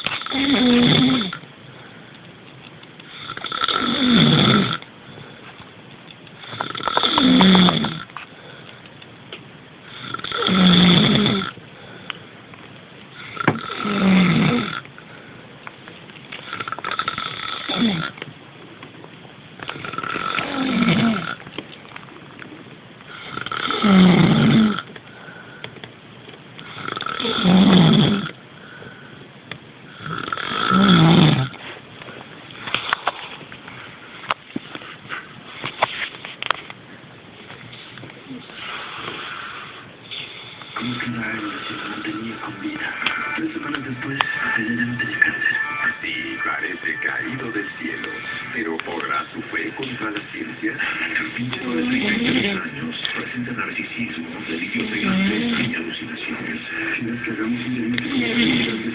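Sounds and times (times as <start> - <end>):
person snoring: 0.0 - 1.4, 3.1 - 4.8, 6.4 - 8.1, 9.9 - 11.6, 13.2 - 14.8, 16.4 - 18.2, 19.7 - 21.4, 23.1 - 24.9, 26.6 - 28.4, 29.9 - 31.6, 38.3 - 43.0, 50.7 - 53.3, 54.4 - 58.9.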